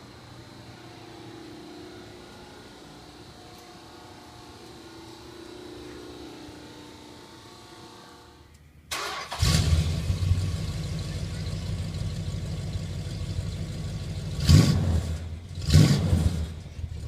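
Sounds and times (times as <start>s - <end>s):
starter cranking engine: 8.9s - 11.3s
engine throttle blips: 8.9s - 17.0s
car engine idling deeply: 9.4s - 17.0s.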